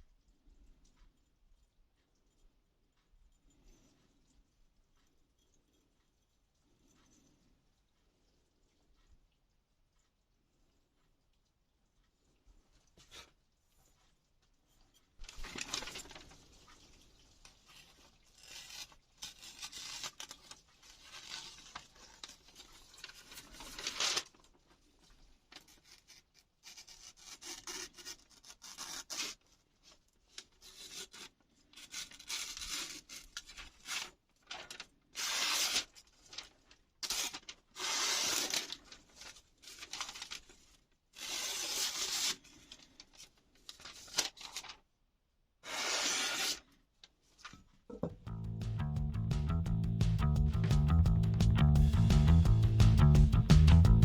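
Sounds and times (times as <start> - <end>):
knife slicing through paper: 17.6 - 24.4, 25.6 - 29.6, 30.5 - 44.8, 45.6 - 46.7.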